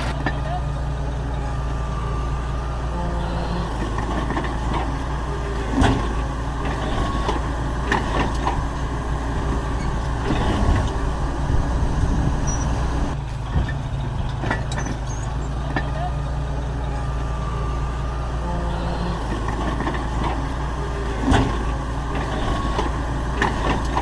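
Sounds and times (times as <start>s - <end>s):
diesel machinery engine drone: 0.0s - 24.0s
metallic clanks and knocks: 13.3s - 15.9s.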